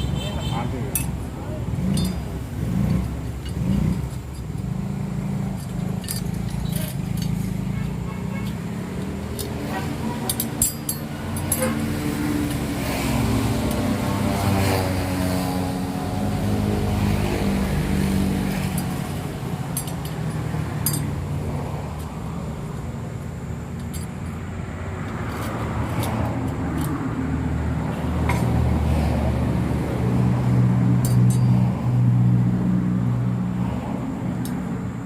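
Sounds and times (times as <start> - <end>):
sharp metallic clinks: 0.9 - 12.8, 18.5 - 21.3, 23.7 - 24.4, 31.0 - 31.6
engine running: 0.9 - 24.5.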